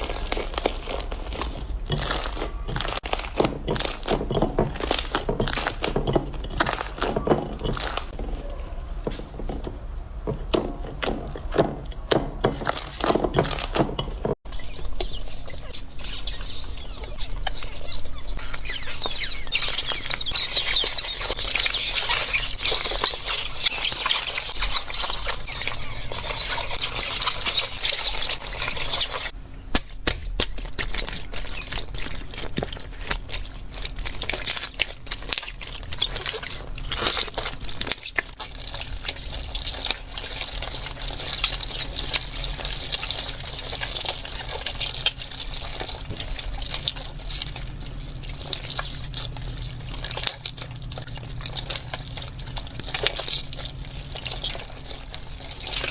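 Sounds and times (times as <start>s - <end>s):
slime squished by hand: 0.0s - 55.9s.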